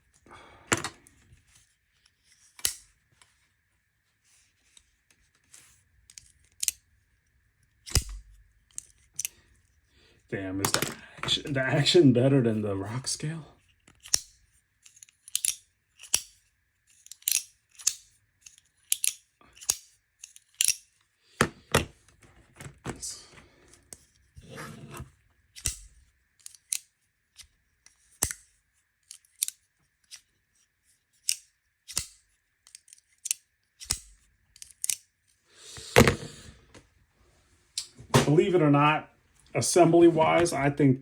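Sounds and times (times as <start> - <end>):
folding knife metallic clicks: 2.6 - 2.9, 14.0 - 14.3, 14.9 - 16.4, 17.0 - 20.8, 28.2 - 28.4, 31.2 - 35.0.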